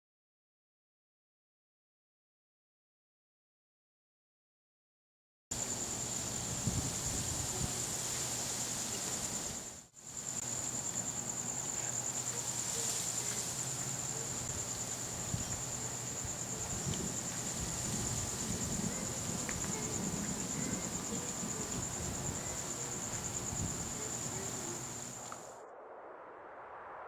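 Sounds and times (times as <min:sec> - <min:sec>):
crickets chirping: 0:05.5 - 0:25.6.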